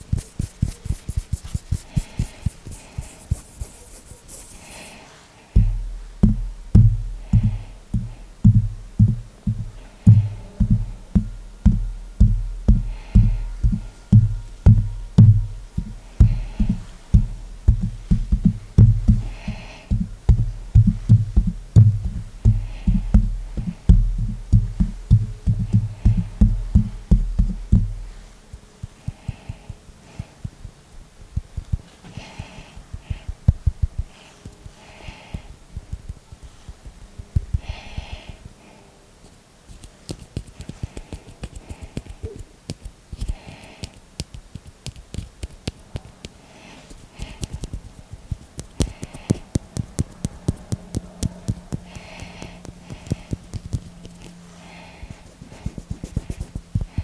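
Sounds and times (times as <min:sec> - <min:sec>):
hands thumping on microphone: 0:05.6 - 0:28.3
finger clicks: 0:47.2 - 0:54.4.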